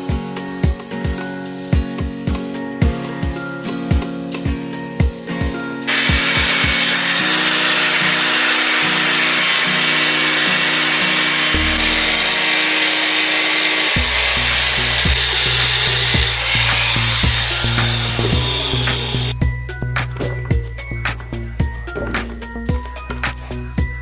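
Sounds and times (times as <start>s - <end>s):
background music with low beat: 0.0s - 6.8s, 14.0s - 24.0s
power tool cutting: 5.9s - 19.4s.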